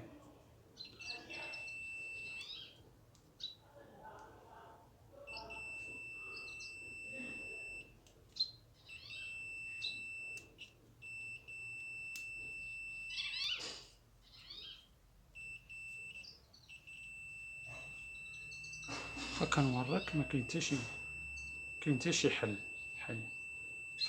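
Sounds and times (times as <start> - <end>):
multimeter continuity buzzer beeping: 1.0 - 2.8, 5.2 - 13.7, 15.4 - 24.0
short high chirping calls: 13.1 - 14.9.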